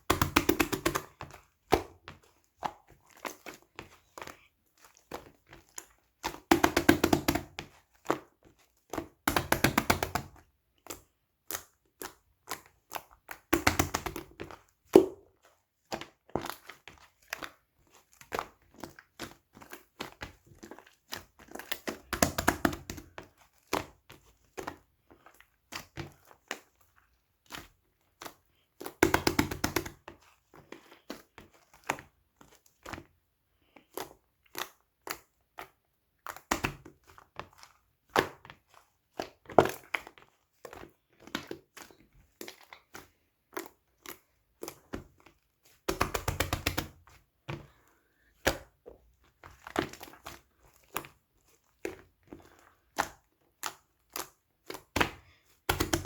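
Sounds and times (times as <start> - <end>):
slime squished with clicking pops: 52.9 - 56.0.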